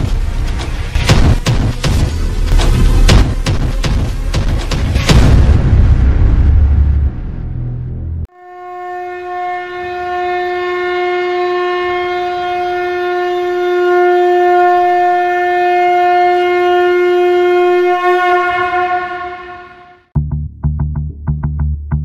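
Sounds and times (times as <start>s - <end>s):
horn long held note: 8.3s - 20.2s.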